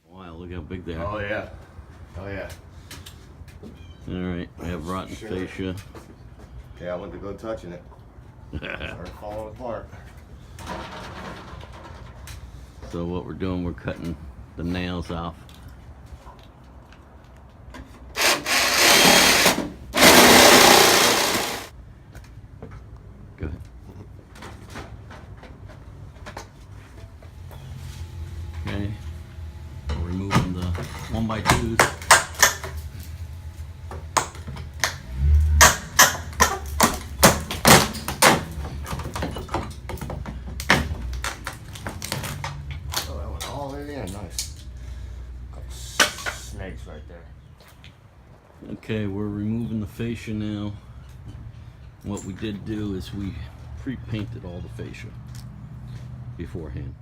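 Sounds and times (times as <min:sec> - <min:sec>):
hammer and pry bar on wood: 0:18.2 - 0:21.7, 0:31.4 - 0:32.8, 0:34.2 - 0:41.0
power tool cutting through nails: 0:18.2 - 0:21.7, 0:35.6 - 0:37.9.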